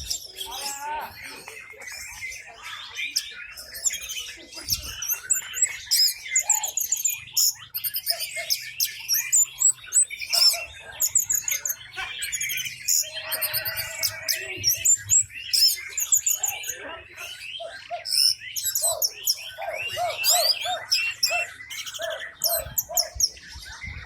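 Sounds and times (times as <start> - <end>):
thrush singing: 4.3 - 17.1.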